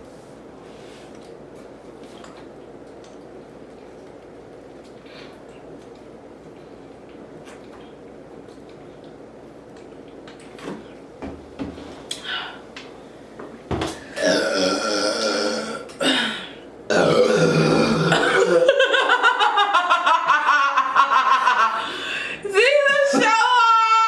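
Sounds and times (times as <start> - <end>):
loud burps: 14.0 - 18.8.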